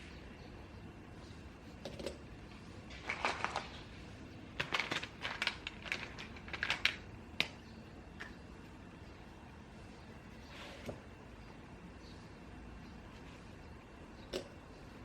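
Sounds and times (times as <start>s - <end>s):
scratchy clicks and rustles at a desk: 4.6s - 7.6s.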